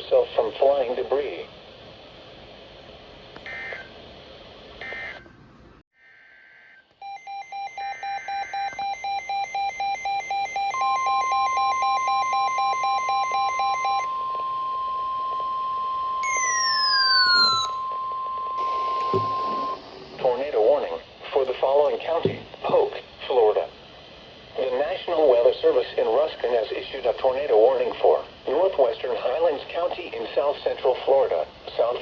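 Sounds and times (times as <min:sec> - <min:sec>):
steady warning alarm tone: 0:03.5 - 0:03.9, 0:04.8 - 0:05.3, 0:06.0 - 0:20.9
rapid electronic beeping: 0:07.1 - 0:14.0
warbling digital data bursts: 0:16.2 - 0:19.8.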